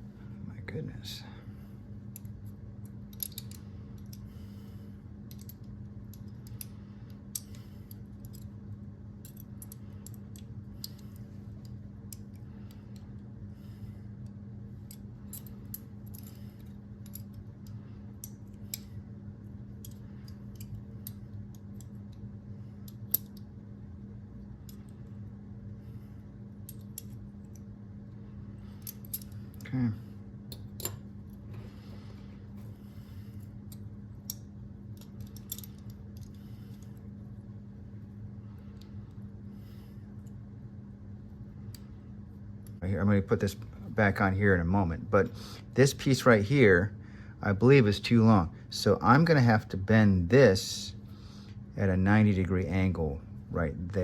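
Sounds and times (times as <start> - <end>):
steady low hum: 0.0 - 54.0
metal latch parts clicking: 3.1 - 4.2, 5.3 - 6.7, 30.5 - 31.1, 33.7 - 36.4.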